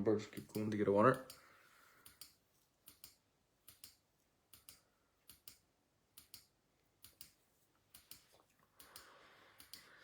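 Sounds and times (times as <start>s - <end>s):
computer mouse clicking: 2.0s - 5.6s, 6.2s - 9.9s.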